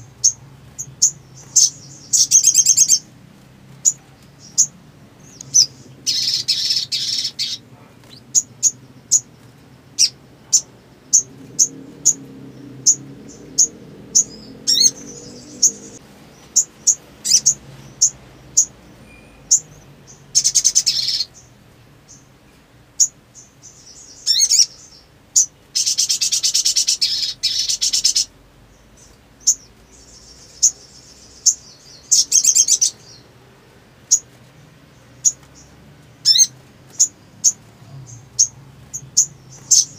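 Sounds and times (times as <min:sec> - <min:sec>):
bird chirping and trilling: 0:00.0 - 0:03.2, 0:03.8 - 0:33.3, 0:34.1 - 0:34.3, 0:34.9 - 0:39.9.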